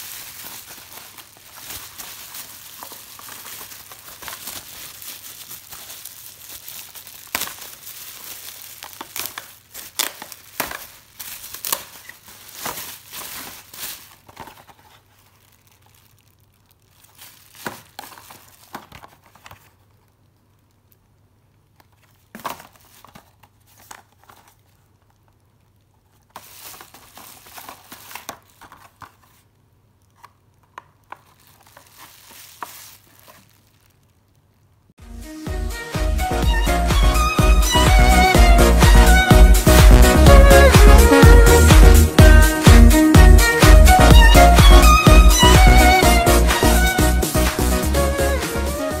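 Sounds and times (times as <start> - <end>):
packaging crinkling: 0.0 - 34.6.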